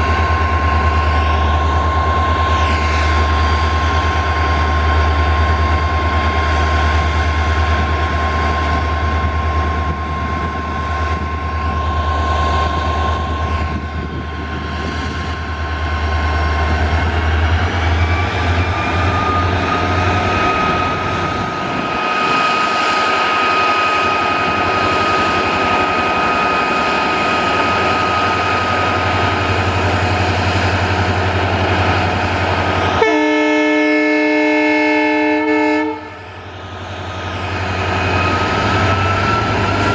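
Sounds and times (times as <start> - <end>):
diesel locomotive engines droning: 0.0 - 39.9
locomotive horn blast: 32.9 - 36.3.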